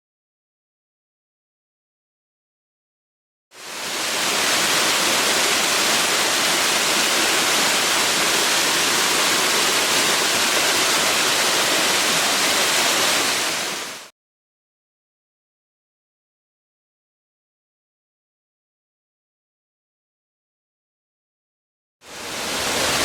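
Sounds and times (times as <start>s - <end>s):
waterfall rushing: 3.6s - 14.1s, 22.1s - 23.0s.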